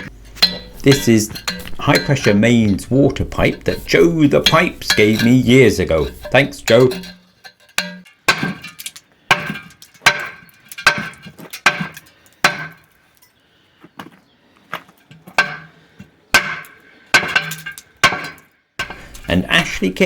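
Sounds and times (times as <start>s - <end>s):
hammer striking steel pipe: 0.0s - 8.7s, 9.3s - 12.8s, 16.4s - 19.1s.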